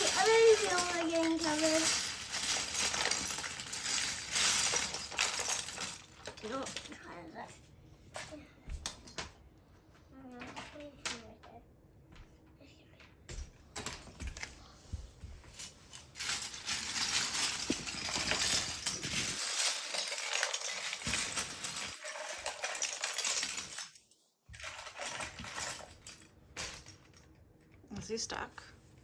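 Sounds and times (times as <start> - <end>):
plastic bricks clattering: 0.0 - 7.6, 15.5 - 27.5.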